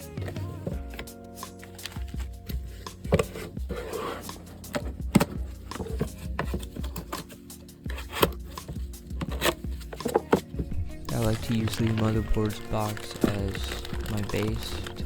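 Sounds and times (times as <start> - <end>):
soft background music: 0.0 - 15.0
knocks and clicks of packaging: 0.2 - 3.9, 4.6 - 15.0
rubbing scrape: 3.2 - 4.7.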